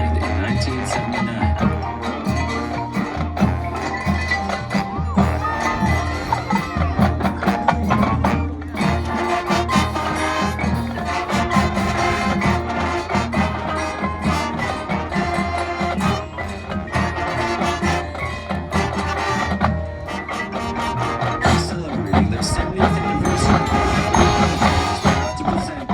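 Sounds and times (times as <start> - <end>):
drums keeping a steady beat: 0.0 - 25.9
marching band playing: 0.0 - 25.9.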